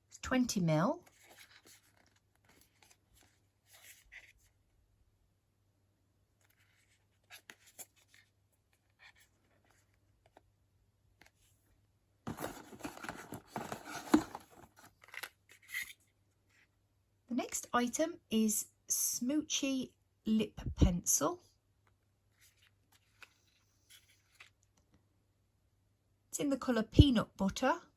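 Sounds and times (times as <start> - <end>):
packaging taps and rustles: 12.3 - 15.8
packaging rustling and crinkling: 12.3 - 16.0.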